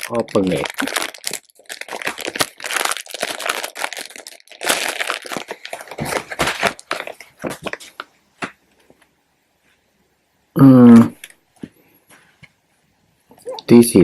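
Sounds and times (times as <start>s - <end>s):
packaging crinkling and rustling: 0.0s - 9.0s.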